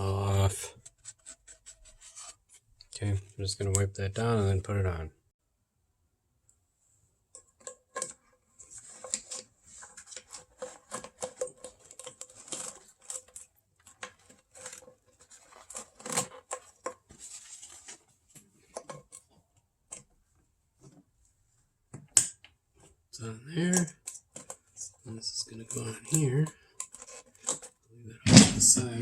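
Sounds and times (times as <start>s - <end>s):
plastic parts clicking: 7.4s - 17.0s, 23.7s - 29.0s.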